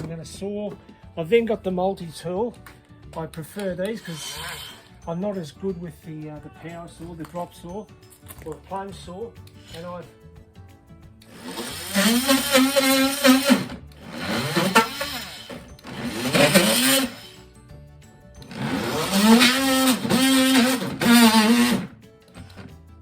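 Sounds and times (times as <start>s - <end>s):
oscillating multi-tool cutting wood: 3.8s - 4.9s, 9.6s - 10.0s, 11.2s - 17.4s, 18.4s - 22.7s.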